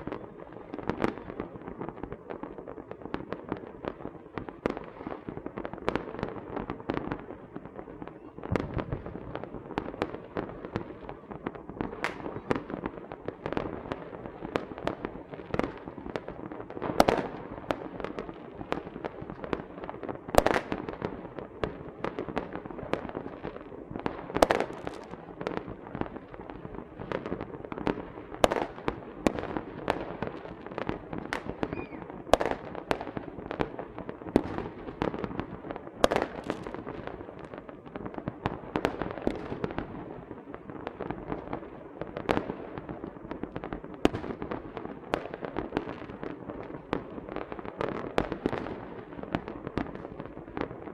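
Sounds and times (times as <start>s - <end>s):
firecrackers popping and crackling: 0.0s - 50.9s
loud firework bangs: 26.9s - 40.0s.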